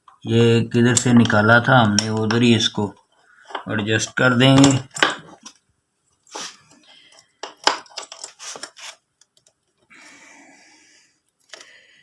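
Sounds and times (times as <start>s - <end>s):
metallic clicks and scrapes: 7.1s - 9.5s.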